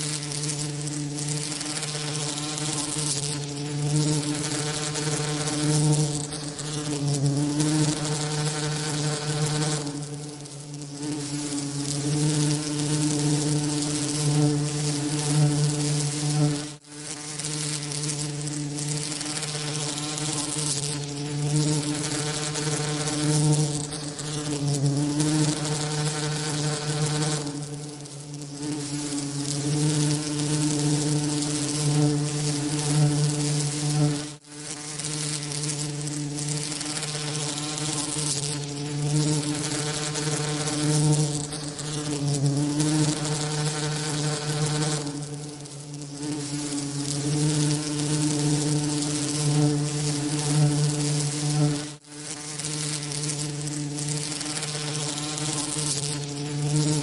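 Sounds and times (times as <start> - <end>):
bee wings buzzing: 0.0 - 57.0.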